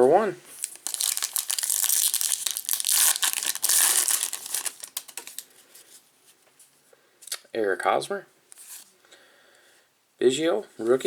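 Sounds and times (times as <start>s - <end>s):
foil wrapper crinkling: 0.5s - 5.6s.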